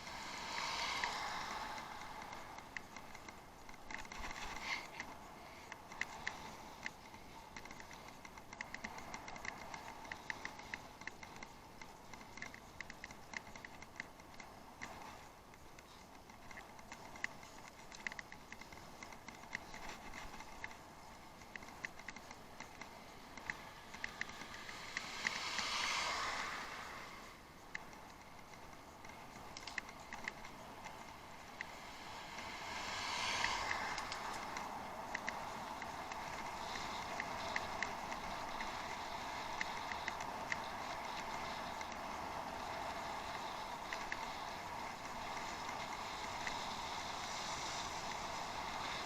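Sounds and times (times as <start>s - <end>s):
faint hiss: 0.0s - 8.2s, 8.9s - 49.0s
bicycle ticking and clicking: 0.0s - 49.0s
tyre and wind rush: 14.6s - 49.0s.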